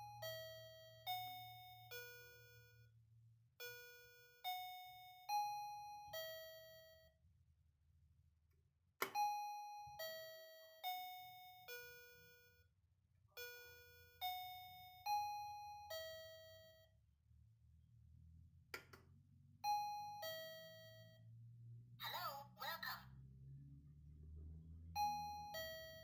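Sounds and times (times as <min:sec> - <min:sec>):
doorbell chime melody: 0:03.7 - 0:07.1, 0:09.2 - 0:12.6, 0:13.4 - 0:16.9, 0:19.6 - 0:21.2, 0:25.0 - 0:26.0.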